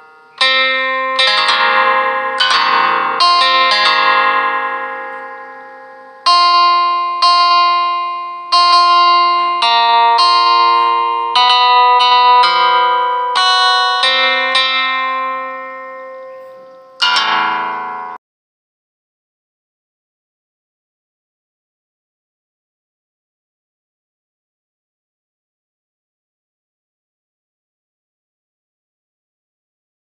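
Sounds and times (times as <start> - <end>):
plucked guitar music: 0.0 - 18.2.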